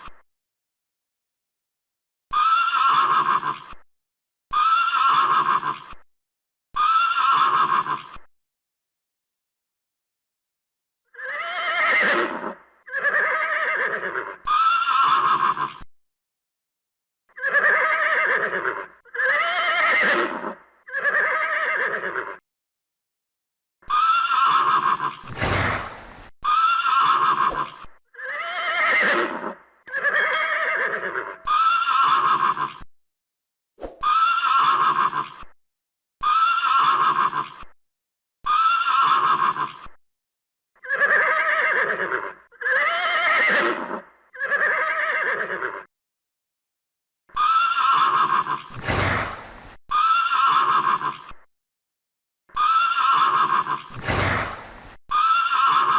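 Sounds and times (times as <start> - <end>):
horse neighing: 26.5 - 32.8, 47.4 - 48.8, 49.9 - 51.4, 52.6 - 54.0, 55.1 - 55.9.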